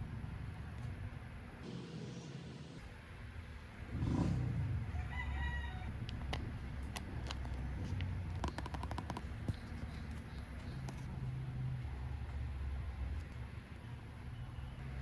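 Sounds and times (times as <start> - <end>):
rooster crowing: 4.9 - 6.0.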